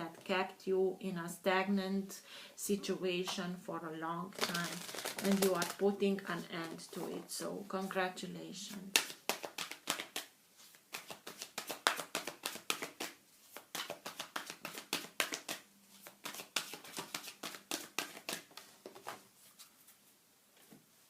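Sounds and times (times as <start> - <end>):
cards being shuffled: 4.3 - 7.1, 8.9 - 19.2.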